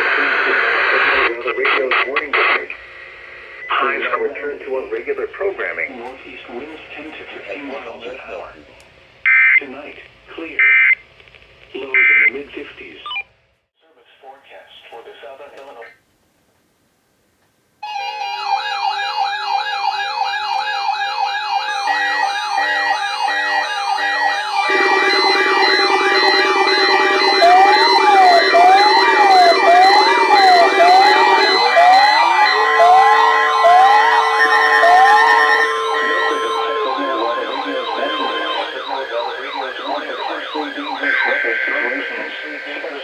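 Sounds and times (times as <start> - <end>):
high warble siren: 17.8 - 43.0
two-tone hi-lo siren: 17.8 - 43.0
yelping siren sweep: 18.2 - 43.0
loud harsh buzz: 21.7 - 43.0
steady pulsing tone: 21.7 - 43.0.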